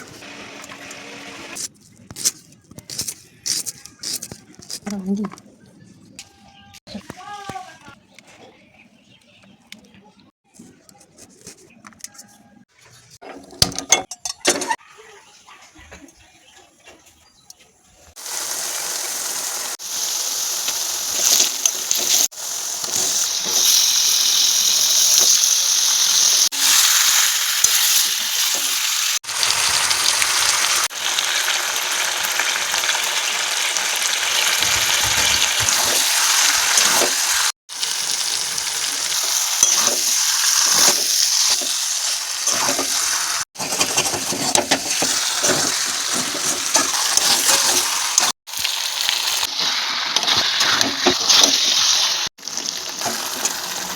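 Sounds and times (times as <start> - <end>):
food sizzling in hot oil: 18.2 - 53.9.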